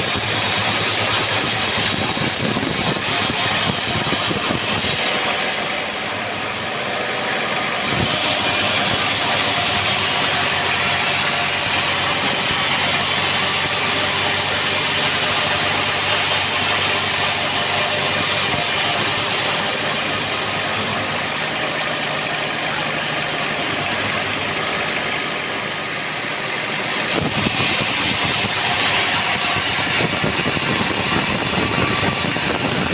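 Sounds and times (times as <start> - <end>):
bandsaw sawmill engine hum: 0.0 - 32.9
loud even hiss: 27.1 - 32.9.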